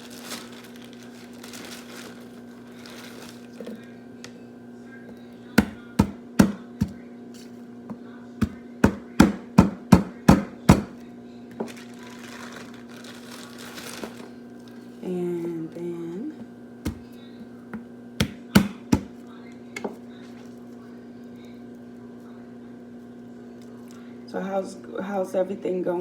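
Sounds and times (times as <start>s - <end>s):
knife chopping on cutting board: 18.2s - 19.1s.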